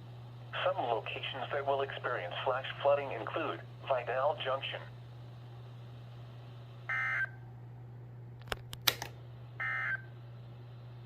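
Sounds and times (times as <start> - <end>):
steady low hum: 0.0 - 11.0
sharp clicks: 8.4 - 9.2.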